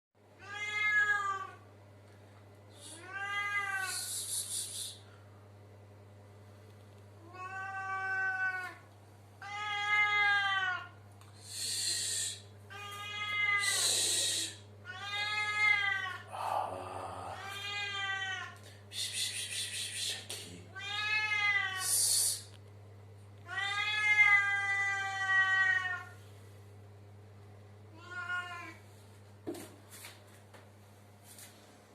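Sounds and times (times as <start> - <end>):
cat meowing: 0.4 - 1.6, 2.9 - 3.9, 7.2 - 8.8, 9.4 - 10.9, 12.7 - 13.8, 14.9 - 16.2, 17.4 - 18.6, 20.8 - 21.9, 23.5 - 26.2, 27.9 - 28.8.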